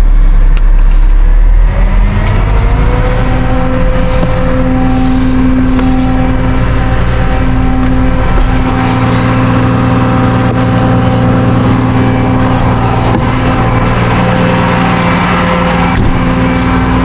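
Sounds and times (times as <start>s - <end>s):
heavy engine running: 0.0s - 17.0s
short high-pitched beeps: 11.1s - 12.9s.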